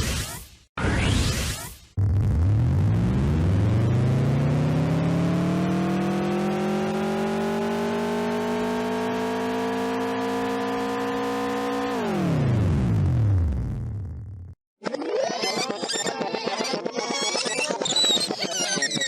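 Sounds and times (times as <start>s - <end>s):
rising machine hum: 2.0s - 14.6s.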